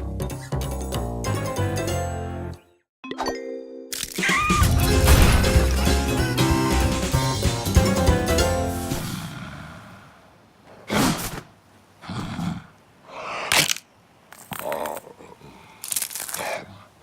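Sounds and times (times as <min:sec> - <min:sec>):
music: 0:00.0 - 0:02.8, 0:03.5 - 0:09.0.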